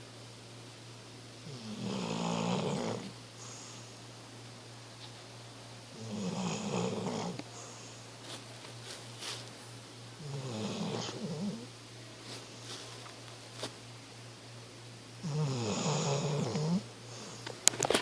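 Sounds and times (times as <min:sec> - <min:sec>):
steady low hum: 0:00.0 - 0:18.0
person snoring: 0:01.5 - 0:03.1, 0:06.0 - 0:07.4, 0:10.2 - 0:11.7, 0:15.2 - 0:16.9.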